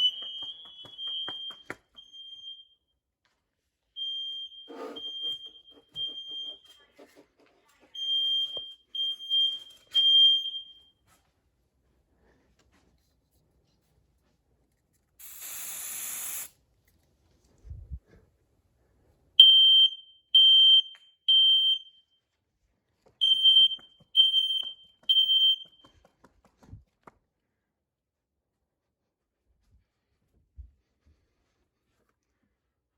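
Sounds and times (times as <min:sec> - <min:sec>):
smoke alarm beeping: 0:00.0 - 0:02.8, 0:04.0 - 0:06.8, 0:08.0 - 0:11.0, 0:15.2 - 0:16.5, 0:19.4 - 0:22.2, 0:23.2 - 0:25.9
aerosol spray hiss: 0:15.2 - 0:16.5.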